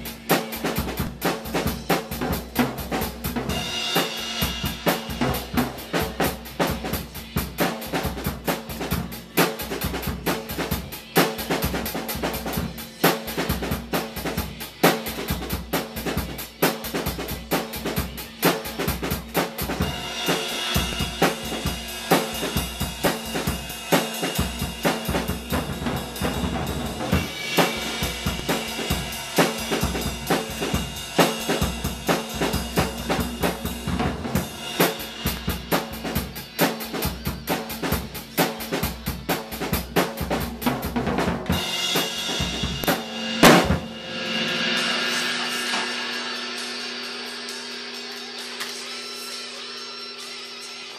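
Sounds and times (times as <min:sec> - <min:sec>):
cymbals ringing: 0:03.5 - 0:05.8, 0:19.8 - 0:36.5, 0:41.6 - 0:50.8
snare drum strokes: 0:18.4 - 0:36.9, 0:40.7 - 0:49.2.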